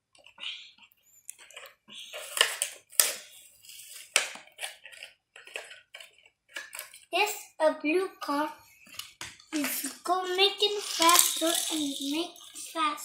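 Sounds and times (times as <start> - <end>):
plastic packaging crinkling: 9.0 - 12.8.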